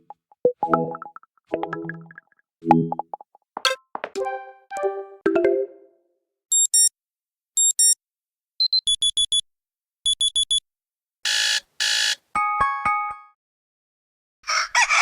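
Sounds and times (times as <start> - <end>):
electronic alarm clock beeps: 6.5 - 6.9, 7.6 - 8.0, 8.6 - 9.4, 10.1 - 10.6
harsh buzzer bursts: 11.3 - 12.2.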